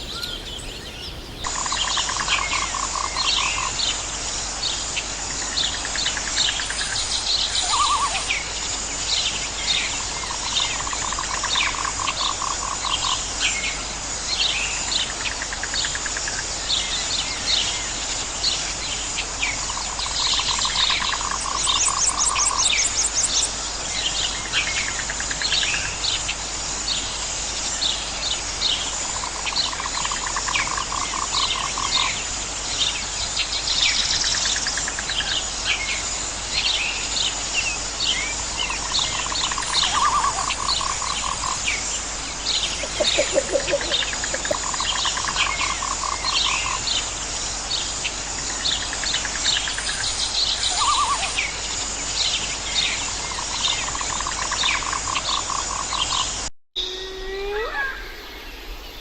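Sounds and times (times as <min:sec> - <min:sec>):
frogs chirping: 0:00.0 - 0:04.1, 0:05.3 - 0:08.6, 0:10.1 - 0:13.4, 0:19.5 - 0:23.5, 0:28.8 - 0:32.4, 0:38.1 - 0:47.6, 0:48.4 - 0:51.6, 0:53.1 - 0:59.0
high insect drone: 0:17.5 - 0:52.3.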